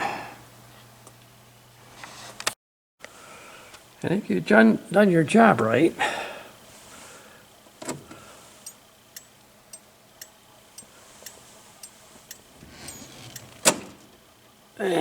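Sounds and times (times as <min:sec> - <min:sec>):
turn signal flasher ticking: 0:08.6 - 0:13.6.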